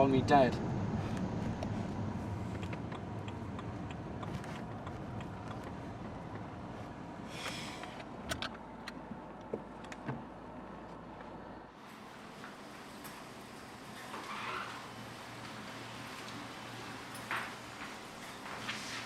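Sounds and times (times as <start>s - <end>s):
car engine rumbling: 0.0s - 11.8s.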